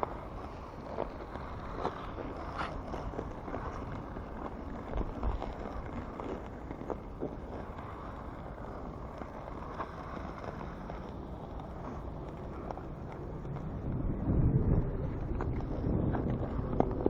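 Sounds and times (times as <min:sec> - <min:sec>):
ice skate blades gliding: 0:00.0 - 0:17.0
wind buffeting microphone: 0:00.0 - 0:17.0.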